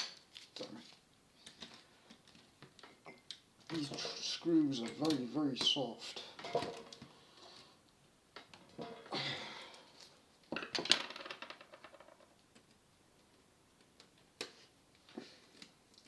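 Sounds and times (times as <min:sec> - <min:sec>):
metal parts and tools clinking: 0:02.8 - 0:07.0.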